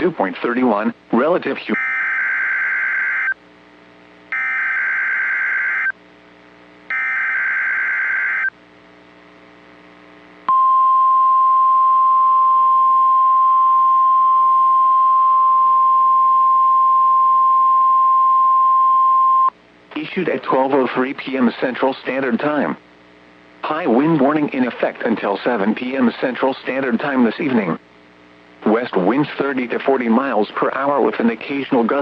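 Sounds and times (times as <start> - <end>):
steady warning alarm tone: 1.8 - 3.4, 4.3 - 6.0, 6.9 - 8.5.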